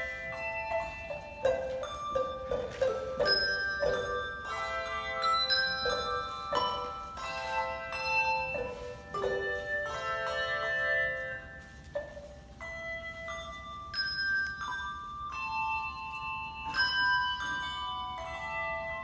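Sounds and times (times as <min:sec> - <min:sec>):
handbell choir playing: 0:00.0 - 0:19.0.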